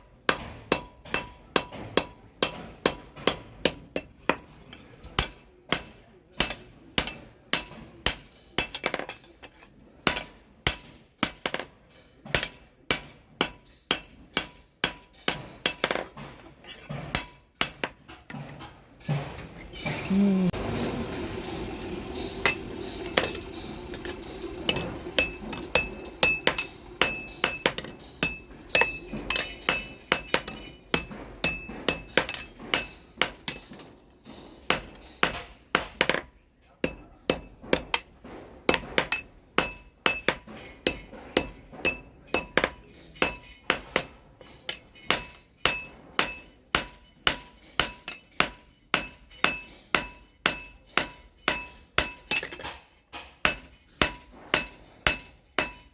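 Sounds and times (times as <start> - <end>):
hammer striking steel on anvil: 0.3 - 4.5, 12.3 - 16.1, 20.6 - 38.1, 38.7 - 55.9.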